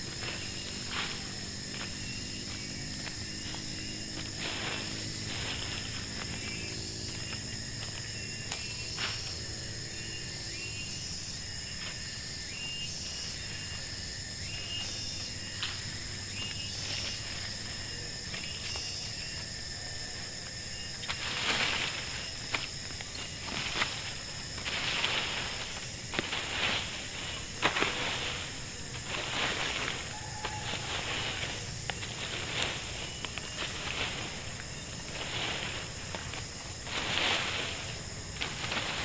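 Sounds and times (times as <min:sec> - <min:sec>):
high insect drone: 0:00.0 - 0:39.0
rustling: 0:21.0 - 0:39.0.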